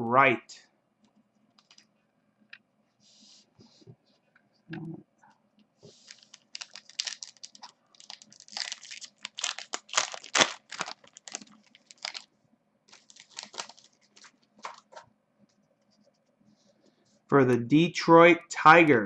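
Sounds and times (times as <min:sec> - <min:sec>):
foil wrapper crinkling and tearing: 0:05.9 - 0:12.3, 0:12.9 - 0:14.8.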